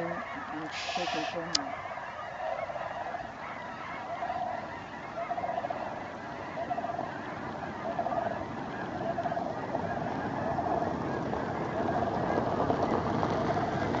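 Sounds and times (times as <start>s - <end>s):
rattling bird calls: 0.0s - 9.4s
flock of cranes and geese calling: 0.0s - 14.0s.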